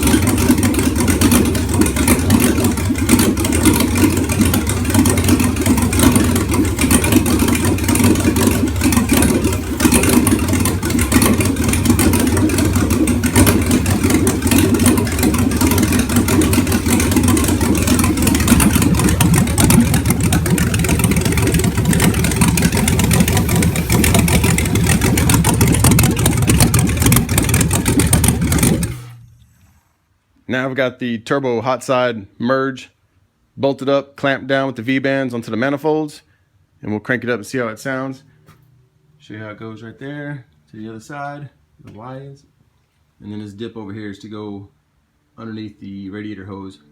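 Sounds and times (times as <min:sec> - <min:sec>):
engine running: 0:00.0 - 0:29.9, 0:37.5 - 0:41.1.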